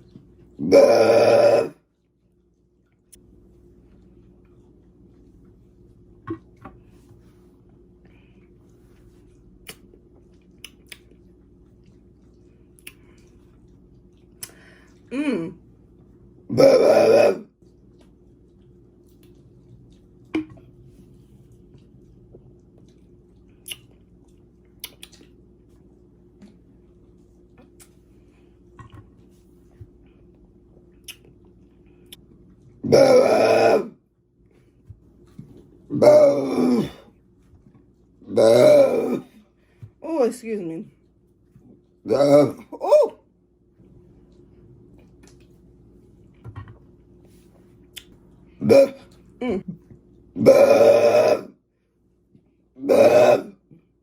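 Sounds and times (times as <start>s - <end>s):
low steady hum: 0.0s - 54.0s
small mouth sounds: 9.6s - 11.2s, 12.8s - 13.2s, 23.5s - 24.0s, 24.7s - 25.3s, 31.0s - 31.4s, 47.9s - 49.8s
loud pitched belch: 32.8s - 33.9s, 38.3s - 39.3s, 48.6s - 49.0s, 50.4s - 51.5s, 52.8s - 53.6s.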